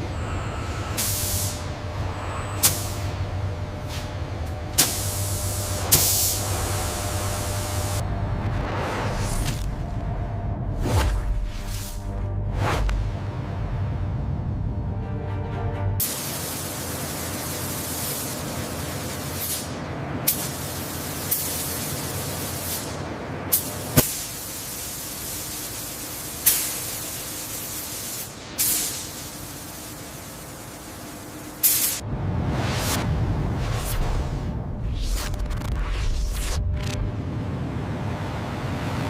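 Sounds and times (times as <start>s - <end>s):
steady spraying hiss: 16.0s - 32.0s
short sharp hiss bursts: 19.4s - 30.5s, 31.6s - 32.0s.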